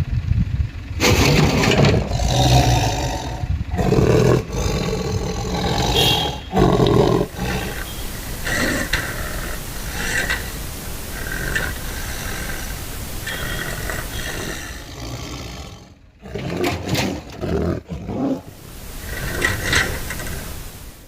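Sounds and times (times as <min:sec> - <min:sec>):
low rumble: 0:00.0 - 0:15.2
leopard growling and snarling: 0:01.0 - 0:20.8.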